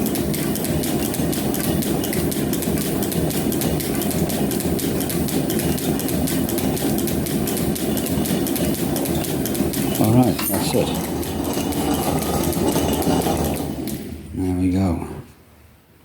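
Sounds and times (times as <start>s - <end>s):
metal planer machine drone: 10.2s - 14.2s.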